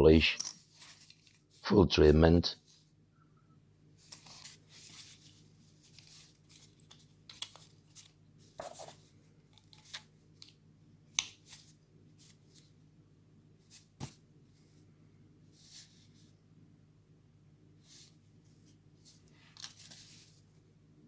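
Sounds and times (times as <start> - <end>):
small clicks and scrapes: 4.0 - 10.6.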